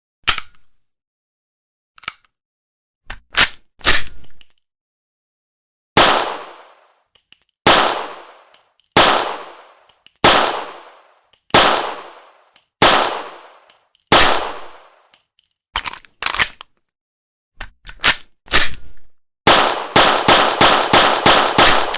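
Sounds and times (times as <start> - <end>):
pistol shots with echo: 6.0 - 6.9, 7.7 - 15.0, 19.5 - 21.9.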